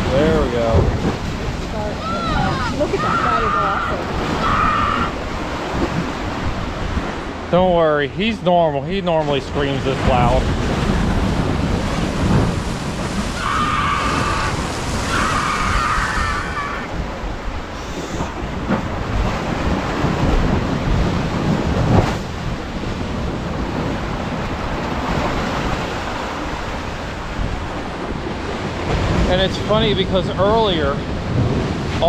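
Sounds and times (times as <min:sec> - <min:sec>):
ocean surf crashing on rocks: 0:00.0 - 0:32.0
wind buffeting microphone: 0:00.0 - 0:32.0
high drawn-out cry: 0:02.0 - 0:05.2, 0:13.4 - 0:17.0.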